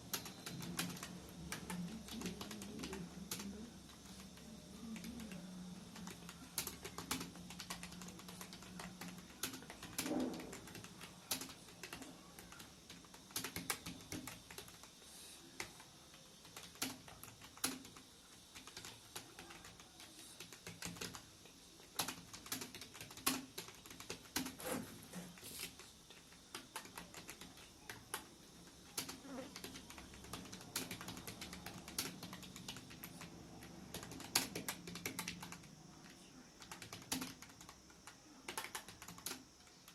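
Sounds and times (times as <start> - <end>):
computer keyboard typing: 0.0 - 39.9
faint low hum: 0.0 - 39.9.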